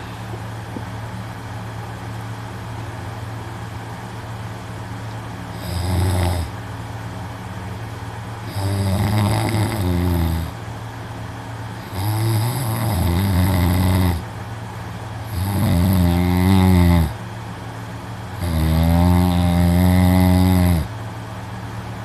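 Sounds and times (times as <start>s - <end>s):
man snoring loudly: 5.5s - 6.6s, 8.4s - 10.6s, 11.8s - 14.2s, 15.2s - 17.2s, 18.4s - 20.9s.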